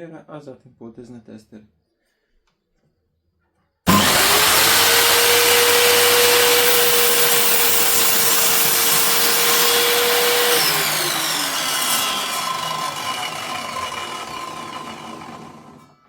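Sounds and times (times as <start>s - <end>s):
mitre saw motor whining: 3.9s - 16.0s.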